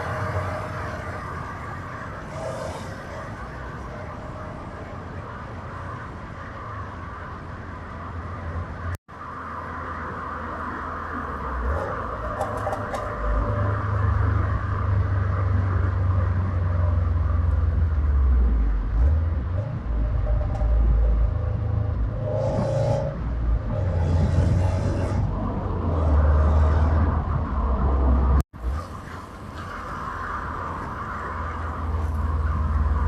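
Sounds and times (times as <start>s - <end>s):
car engine rumbling: 9.6s - 33.0s.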